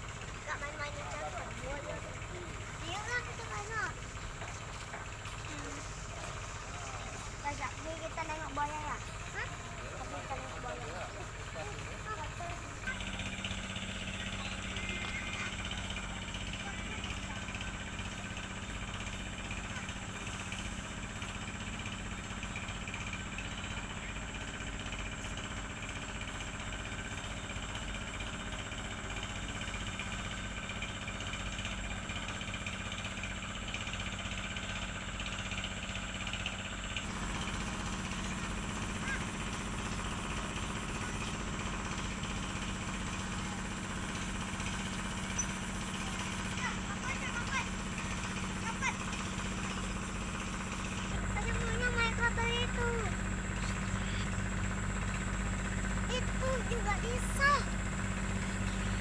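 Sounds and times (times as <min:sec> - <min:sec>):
boat engine chugging: 0:00.0 - 0:59.0.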